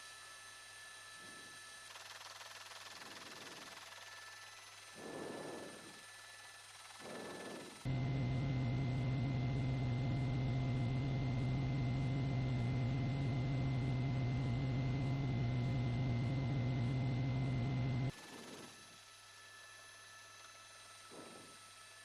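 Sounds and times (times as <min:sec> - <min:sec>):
engine droning: 0:07.0 - 0:18.1.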